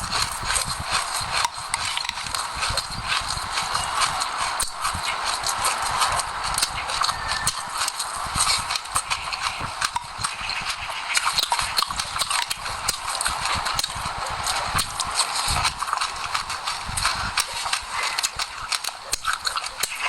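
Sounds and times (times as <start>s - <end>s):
seeds crunching while chewing: 0.0s - 20.0s.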